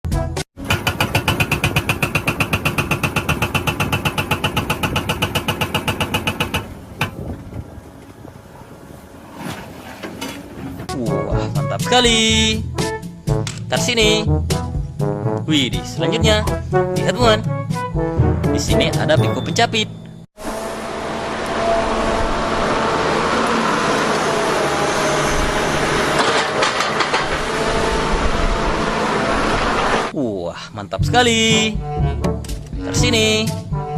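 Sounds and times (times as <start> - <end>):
rapid mechanical clicking: 0.6 - 7.2
sharp knocks: 0.6 - 7.4
excavator engine running: 0.6 - 10.9, 20.4 - 30.1
high ringing tone: 19.4 - 26.2.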